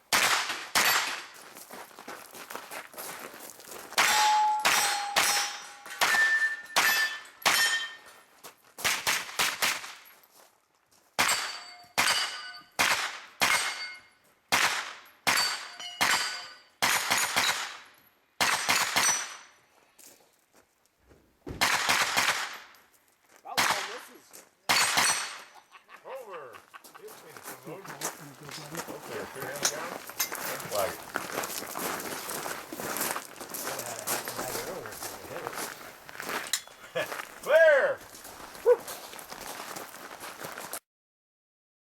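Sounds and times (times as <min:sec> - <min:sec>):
carbine gunshots: 0:00.1 - 0:01.3, 0:11.2 - 0:17.8, 0:18.4 - 0:19.4, 0:21.6 - 0:22.7, 0:23.6 - 0:24.1, 0:24.7 - 0:25.5
steel targets ringing: 0:00.8 - 0:01.2, 0:04.0 - 0:08.2, 0:11.2 - 0:12.8, 0:13.4 - 0:14.2, 0:15.3 - 0:17.5.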